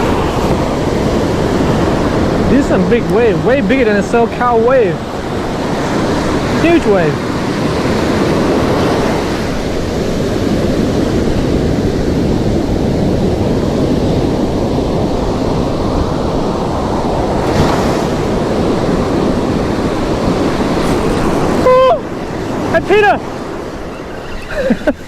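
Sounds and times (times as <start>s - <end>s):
ocean waves breaking: 0.0s - 25.0s.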